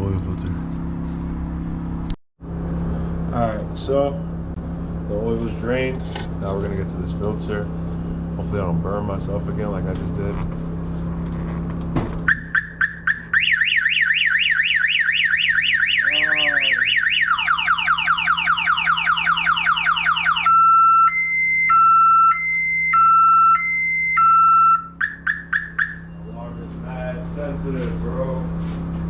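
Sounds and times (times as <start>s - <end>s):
car alarm cycling tones: 12.2s - 26.4s.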